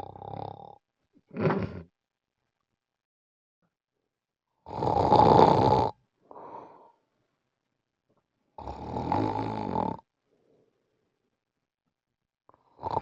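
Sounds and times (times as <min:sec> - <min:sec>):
person snoring: 0:00.0 - 0:01.9, 0:04.7 - 0:06.8, 0:08.6 - 0:10.0, 0:12.8 - 0:13.0
faint breath: 0:06.2 - 0:07.2, 0:10.3 - 0:11.2.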